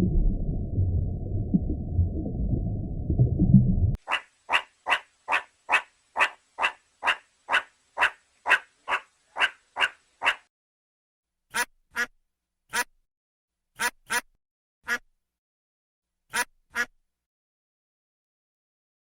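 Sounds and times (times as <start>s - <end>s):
low muffled rumbling: 0.0s - 4.0s
animal calling rhythmically: 4.0s - 10.5s.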